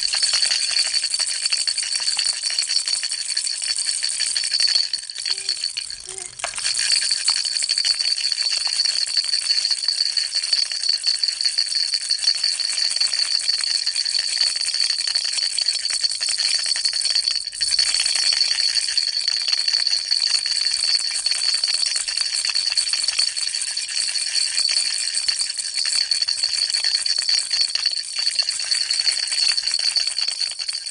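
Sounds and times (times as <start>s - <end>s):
baby rattle shaken: 0.0s - 10.3s, 17.2s - 19.0s, 22.0s - 30.9s.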